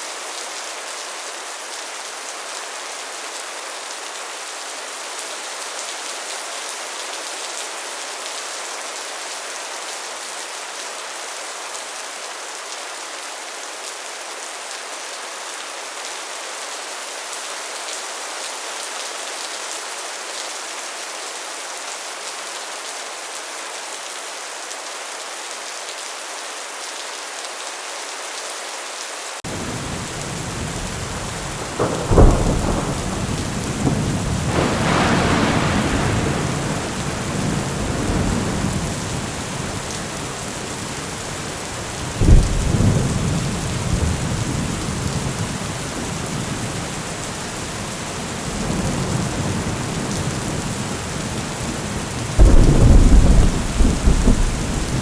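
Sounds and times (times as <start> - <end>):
heavy rain: 0.0 - 55.0
sharp thunderclaps: 29.5 - 41.5, 42.1 - 47.0, 52.2 - 55.0
thunder rumbling: 29.5 - 55.0.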